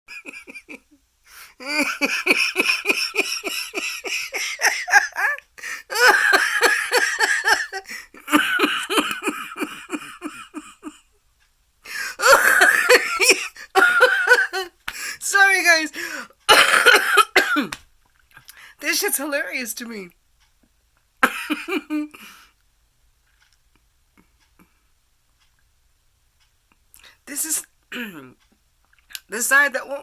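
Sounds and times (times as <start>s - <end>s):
woman laughing hard: 0.1s - 1.0s, 1.6s - 11.1s, 11.9s - 14.7s, 21.2s - 22.2s.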